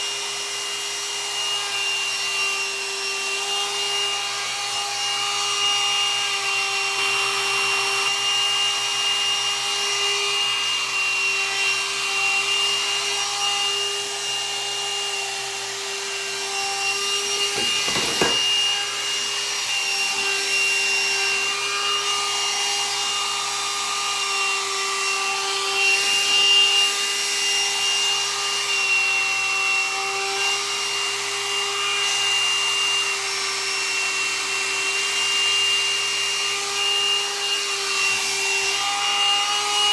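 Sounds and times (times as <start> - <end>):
dryer brush fan whine: 17.5 - 18.6
brief knock: 17.6 - 18.6.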